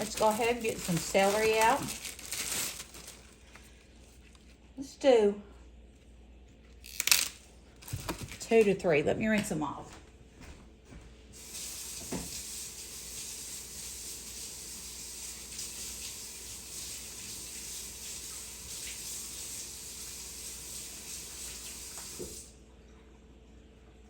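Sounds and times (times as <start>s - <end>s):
faucet water splashing: 11.4s - 22.6s.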